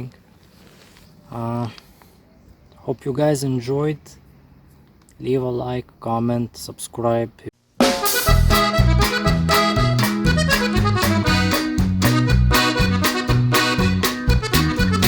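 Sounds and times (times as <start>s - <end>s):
upbeat accordion-like music: 7.8s - 15.0s.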